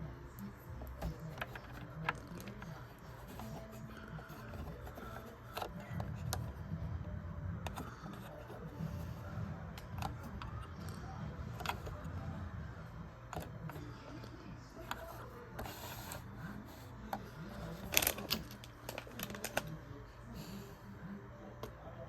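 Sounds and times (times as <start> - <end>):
plastic pieces clicking and rattling: 17.7 - 19.7.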